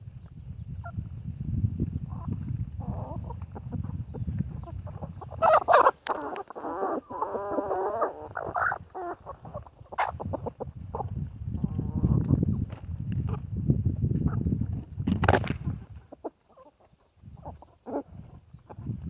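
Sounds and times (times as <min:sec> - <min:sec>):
chickens clucking and calling: 0:01.9 - 0:13.5, 0:15.6 - 0:19.0
pitched squawking calls: 0:04.9 - 0:10.3.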